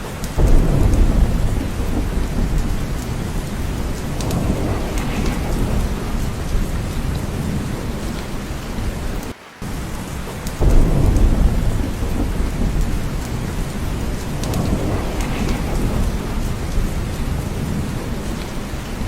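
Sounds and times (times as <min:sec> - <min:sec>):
heavy rain: 0:00.0 - 0:19.0
rumble of thunder: 0:00.2 - 0:19.0.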